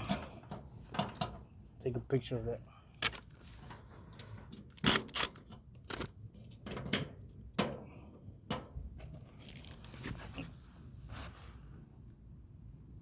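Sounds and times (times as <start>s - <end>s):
metallic clicks and knocks: 3.0s - 7.8s
soft rustling: 9.0s - 12.1s.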